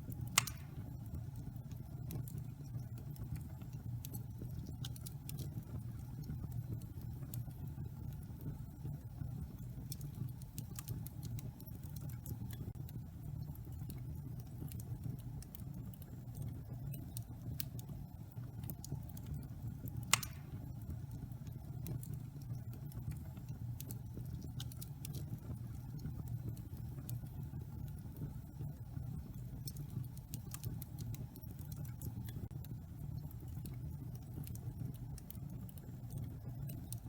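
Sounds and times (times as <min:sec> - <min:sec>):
fire rumbling: 0:00.0 - 0:28.4
fire crackling and popping: 0:00.0 - 0:37.0.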